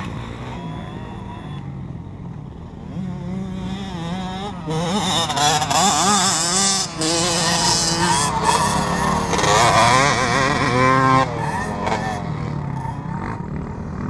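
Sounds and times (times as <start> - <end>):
motocross bike revving: 0.0 - 14.0.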